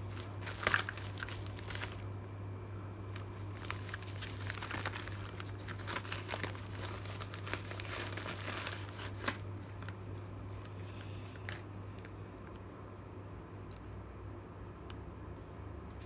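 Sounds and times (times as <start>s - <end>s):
packaging crinkling and rustling: 0.0s - 12.2s.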